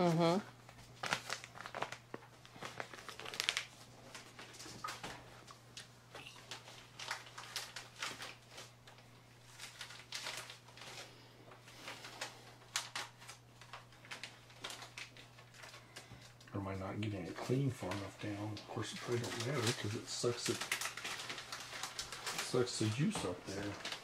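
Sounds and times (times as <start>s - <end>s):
plastic bags rustling and crinkling: 0.0s - 24.0s.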